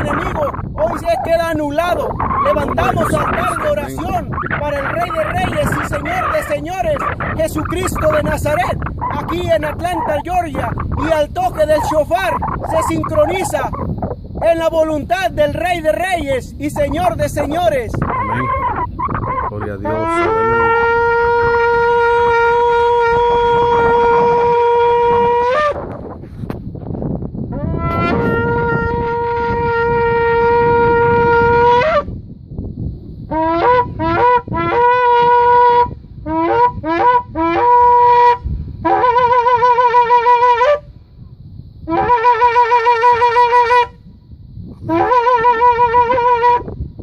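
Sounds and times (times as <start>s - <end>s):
ram's horn trumpet blasts: 19.8s - 25.8s, 27.5s - 32.1s, 33.3s - 40.9s, 41.8s - 44.0s, 44.9s - 46.7s.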